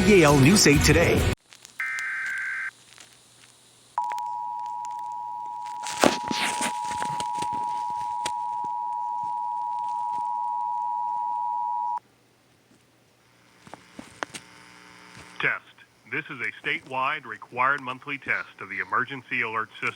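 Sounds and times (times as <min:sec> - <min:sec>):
two-tone emergency alert signal: 0:01.8 - 0:02.7, 0:04.0 - 0:12.0.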